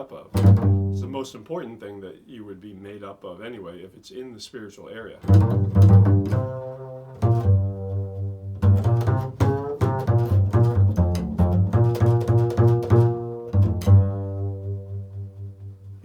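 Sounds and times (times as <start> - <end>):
plucked low string instrument: 0.3 - 1.2, 5.2 - 16.0.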